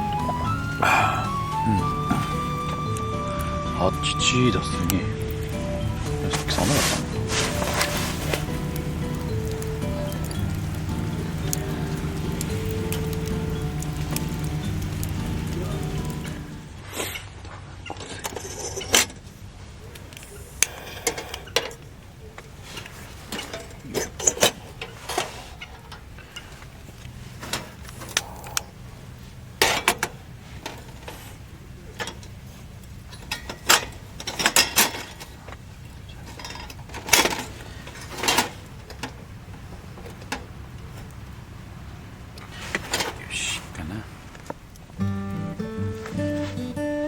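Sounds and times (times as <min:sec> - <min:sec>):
low steady background noise: 0:00.0 - 0:47.0
utensils and pans clinking: 0:04.6 - 0:17.2.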